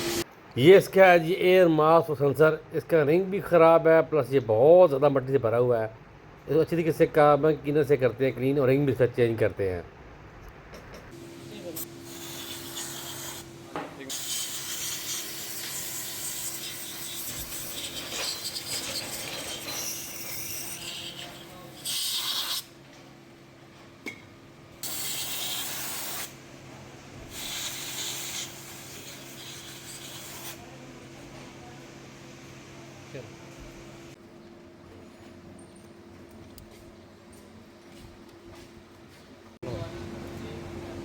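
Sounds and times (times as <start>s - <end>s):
aerosol spray hissing: 11.7s - 13.5s, 27.3s - 30.6s.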